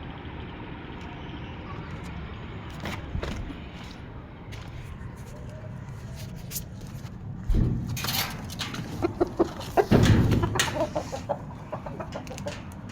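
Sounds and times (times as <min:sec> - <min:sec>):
chickens clucking: 0:08.5 - 0:12.9.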